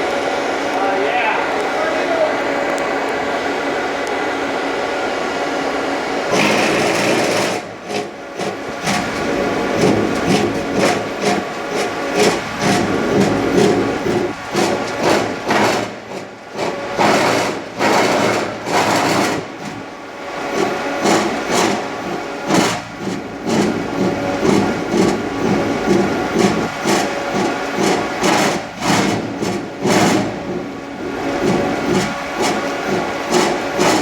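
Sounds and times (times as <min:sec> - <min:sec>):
machine rhythmic mechanical clatter: 0:06.2 - 0:34.0.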